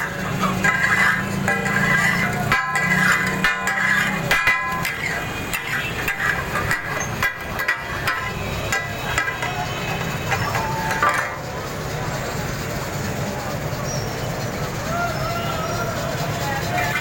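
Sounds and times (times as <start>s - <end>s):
spatulas clanking on griddle: 0.0s - 11.5s, 16.7s - 17.0s
hubbub of voices: 0.0s - 17.0s.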